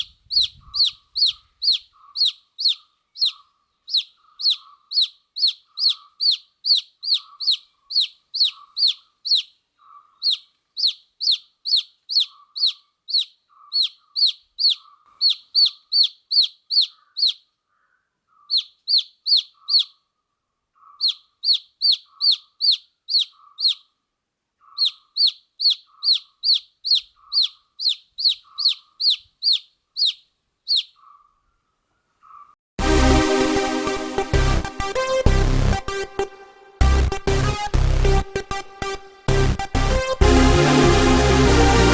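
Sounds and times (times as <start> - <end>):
baby chick peeping: 0.0 - 17.5, 18.3 - 20.0, 20.8 - 24.0, 24.6 - 31.2.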